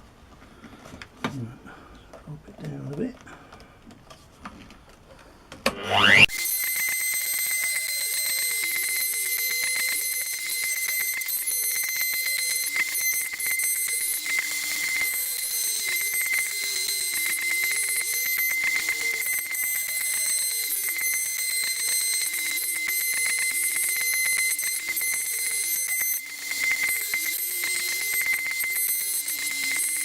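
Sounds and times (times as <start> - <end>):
electric router cutting wood: 5.7 - 7.0.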